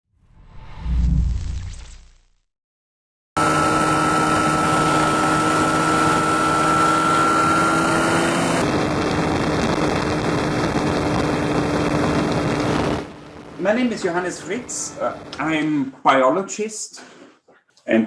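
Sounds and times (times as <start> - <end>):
light aircraft engine humming: 3.4 - 15.4.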